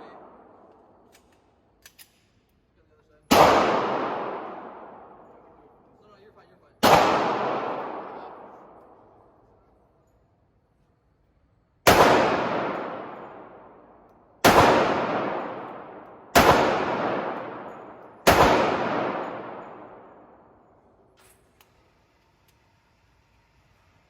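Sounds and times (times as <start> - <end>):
pistol shots with echo: 0.0 - 1.0, 3.3 - 5.7, 6.8 - 9.4, 11.8 - 20.9.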